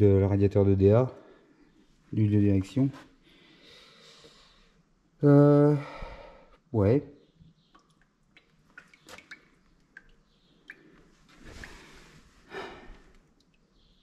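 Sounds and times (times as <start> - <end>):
soft breaths: 3.0 - 4.9, 5.6 - 6.7, 10.9 - 13.4.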